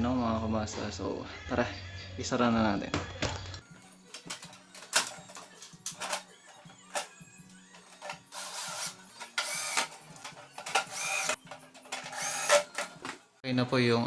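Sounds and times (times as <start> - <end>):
electric screwdriver whirring: 8.0 - 13.0.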